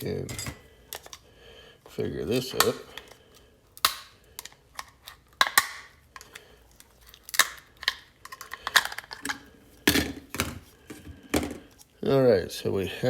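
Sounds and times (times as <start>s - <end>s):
plastic and metal parts clicking: 7.1s - 9.4s.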